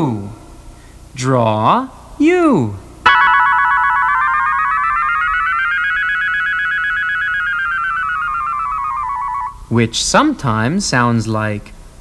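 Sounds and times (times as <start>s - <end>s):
buzzy synthesizer tone gliding: 3.1s - 9.6s.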